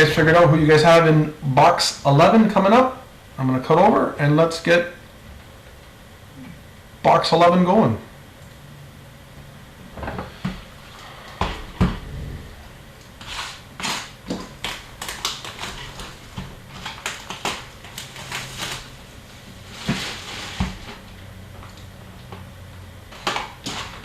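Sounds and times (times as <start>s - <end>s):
wrapper crinkling and rustling: 13.2s - 21.2s.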